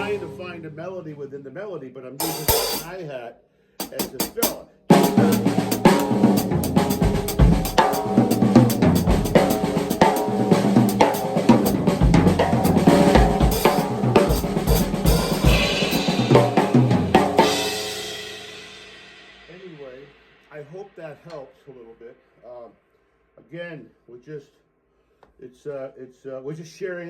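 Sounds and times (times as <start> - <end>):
drum kit groove and fills: 0.0 - 1.2, 2.2 - 3.0, 3.8 - 21.5.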